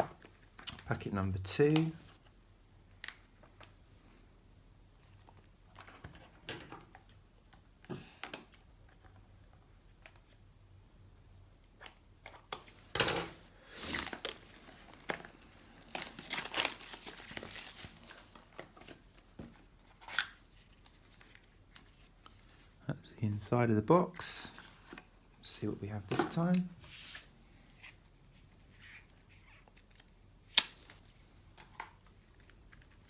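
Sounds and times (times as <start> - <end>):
wrapper crinkling and tearing: 13.8 - 19.0.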